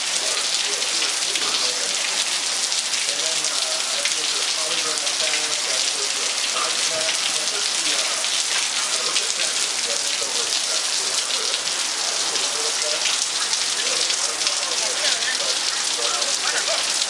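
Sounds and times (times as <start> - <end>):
rain pattering: 0.0 - 17.0.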